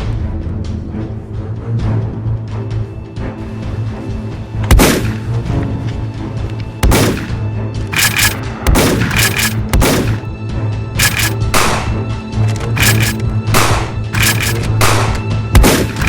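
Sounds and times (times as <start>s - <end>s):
dramatic film music drone: 0.0s - 16.0s
gunshot-like bangs: 4.7s - 5.2s, 6.8s - 10.2s, 11.0s - 12.1s, 12.8s - 16.0s.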